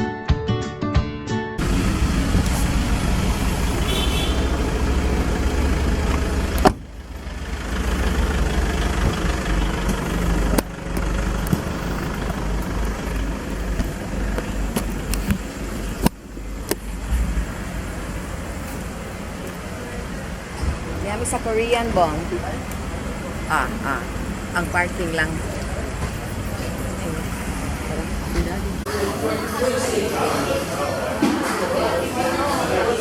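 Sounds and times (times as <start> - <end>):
car engine: 1.6 - 31.3
road rumble: 1.6 - 33.0.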